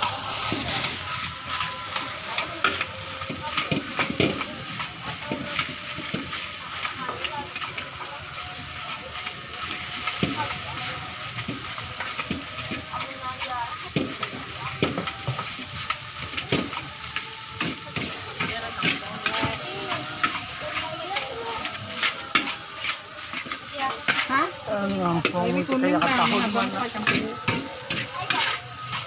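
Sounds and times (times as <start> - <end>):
rice sizzling in a hot pan: 0.0 - 29.0
metal spatula clacking on a pan: 1.9 - 8.1, 11.3 - 24.3, 25.2 - 29.0.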